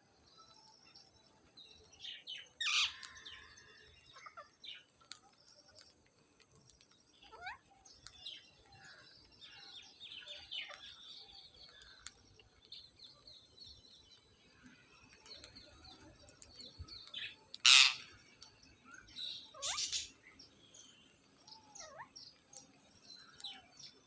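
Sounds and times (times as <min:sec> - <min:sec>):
parrots chirping and chattering: 0:00.5 - 0:14.3, 0:15.2 - 0:24.0
parrot harsh squawk: 0:17.6 - 0:18.0, 0:19.6 - 0:20.1.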